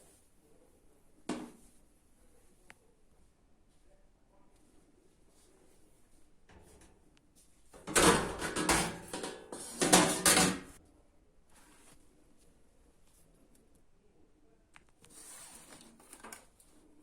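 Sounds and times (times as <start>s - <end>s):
clattering handling noise: 7.8s - 10.8s.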